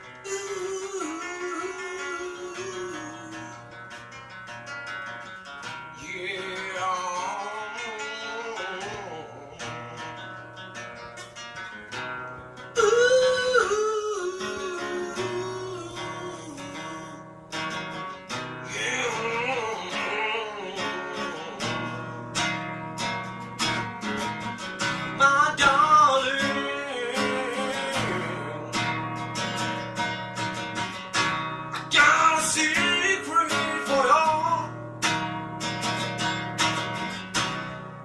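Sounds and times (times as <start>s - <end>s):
strummed acoustic guitar: 0.0s - 38.0s
person singing or humming: 0.2s - 3.7s, 6.0s - 10.3s, 12.8s - 17.3s, 18.7s - 22.5s, 25.2s - 29.0s.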